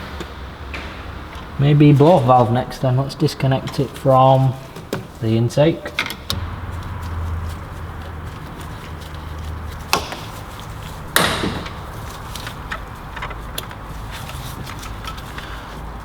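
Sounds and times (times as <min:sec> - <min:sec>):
tools clicking and knocking on hose: 0:03.6 - 0:05.2, 0:05.8 - 0:07.3, 0:07.9 - 0:15.9.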